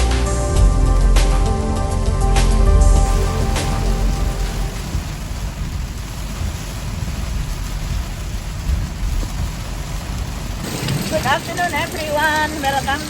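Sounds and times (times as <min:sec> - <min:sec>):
background music: 0:00.0 - 0:05.2
low rumble: 0:00.0 - 0:10.3
rain falling: 0:00.0 - 0:13.0.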